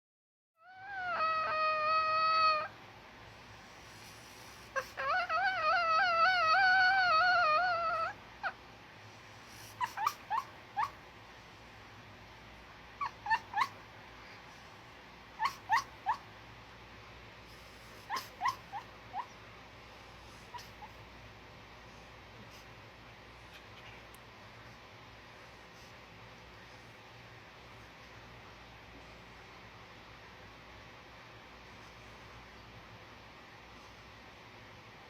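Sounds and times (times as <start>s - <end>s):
puppy short squeaks: 9.6s - 11.0s, 13.0s - 13.8s, 15.4s - 16.2s, 17.7s - 19.4s
puppy whistling whimpers: 15.4s - 16.2s.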